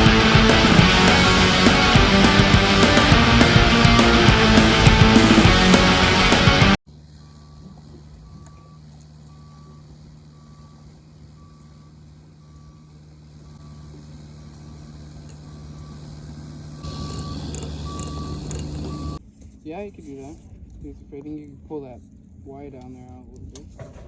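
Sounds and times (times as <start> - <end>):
backup alarm beeping: 0.0 - 6.8, 16.8 - 19.2
diesel engine running: 0.0 - 19.2.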